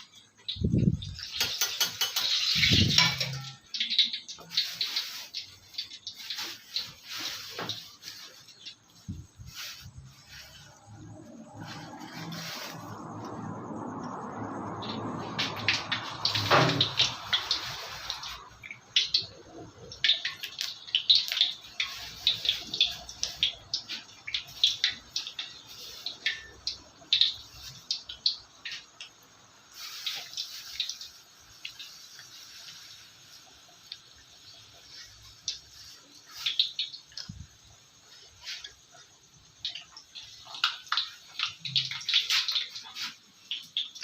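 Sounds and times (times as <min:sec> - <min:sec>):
kitchen tap running: 0:00.0 - 0:09.0, 0:15.2 - 0:33.0, 0:39.4 - 0:44.0
dishes clinking: 0:01.2 - 0:04.2.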